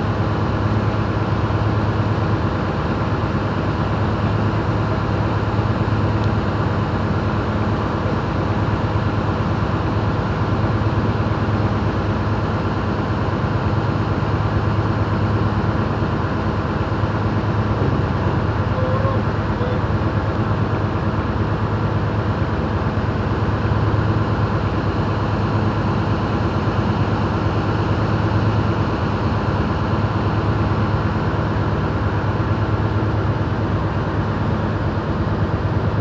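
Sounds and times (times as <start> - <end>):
ship engine droning: 14.4 - 23.1.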